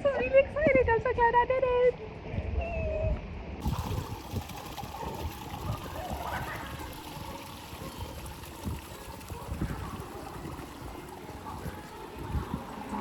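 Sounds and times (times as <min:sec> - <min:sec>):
faint voices: 0:03.6 - 0:13.0
flowing water rushing: 0:03.6 - 0:13.0.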